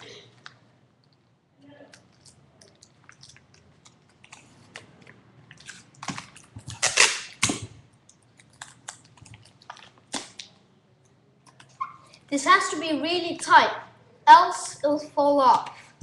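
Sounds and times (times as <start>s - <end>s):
sticky tape pulled off roll: 6.0s - 7.8s
paper crinkling and tapping: 8.4s - 10.5s.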